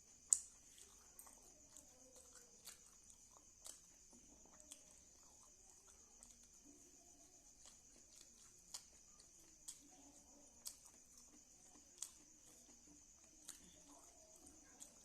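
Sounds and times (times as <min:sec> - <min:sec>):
person chewing: 0:00.0 - 0:15.0.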